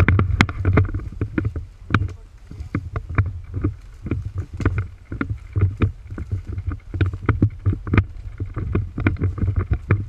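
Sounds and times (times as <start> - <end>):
knocks and crunches: 0.0 - 10.0
low rumble: 0.0 - 10.0.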